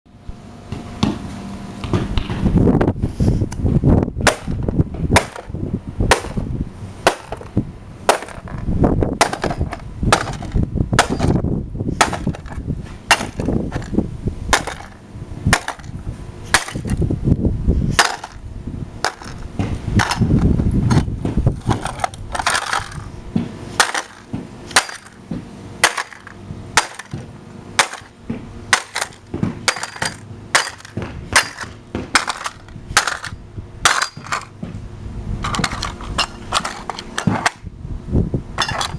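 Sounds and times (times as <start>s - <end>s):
crowbar smashing plastic: 9.2s - 11.4s, 12.0s - 14.0s, 14.6s - 15.0s, 23.8s - 25.2s, 25.8s - 28.1s, 28.7s - 34.5s.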